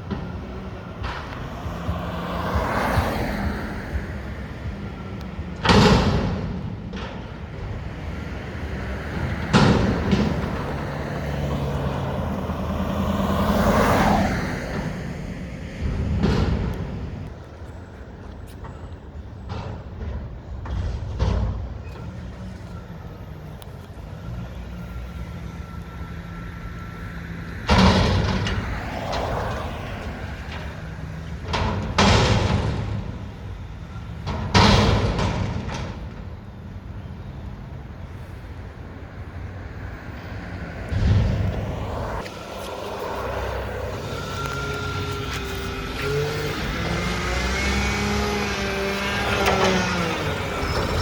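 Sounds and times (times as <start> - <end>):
loud bangs and clanks: 5.5 - 13.2, 14.6 - 17.4, 27.6 - 36.6, 40.7 - 51.0
diesel engine running: 22.3 - 51.0.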